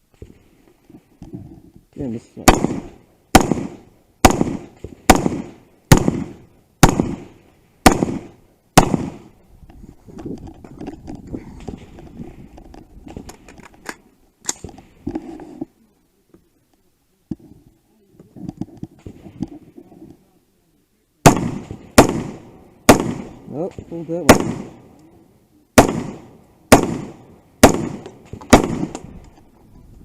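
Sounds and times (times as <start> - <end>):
gunshots: 2.4 - 9.3, 21.2 - 24.9, 25.8 - 29.1
gun handling noise: 9.7 - 15.7.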